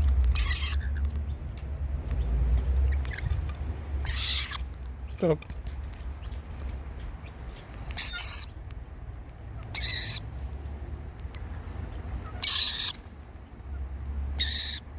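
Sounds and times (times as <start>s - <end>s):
bird harsh hissing screech: 4.0s - 4.6s, 8.0s - 8.5s, 9.8s - 10.2s, 12.4s - 13.0s, 14.4s - 14.8s.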